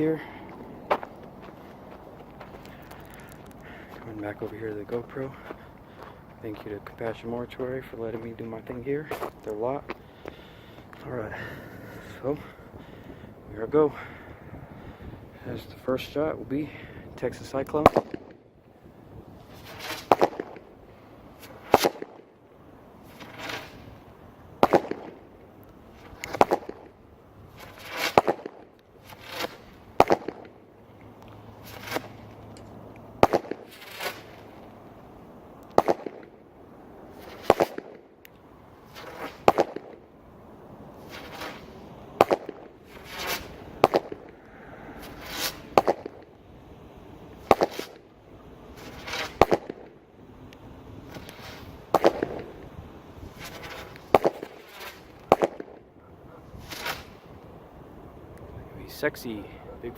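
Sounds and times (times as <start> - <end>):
fireworks cake firing bangs: 24.6 - 25.2, 30.0 - 30.5, 33.2 - 33.8, 39.3 - 40.0.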